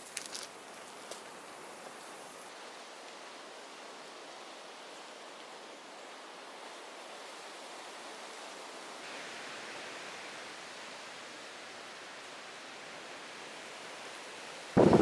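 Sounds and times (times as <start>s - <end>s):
ocean surf washing on beach: 14.8s - 15.0s
sudden loud noise burst: 14.8s - 15.0s.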